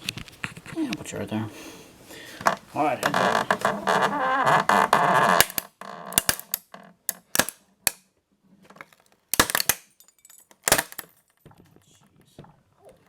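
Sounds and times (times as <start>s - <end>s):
plastic tape roll cracking: 3.0s - 8.0s.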